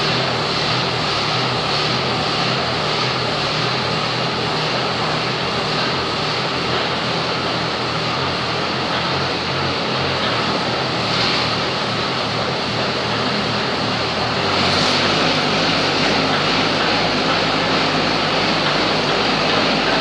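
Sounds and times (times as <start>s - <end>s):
pile driver engine running: 0.0s - 20.0s.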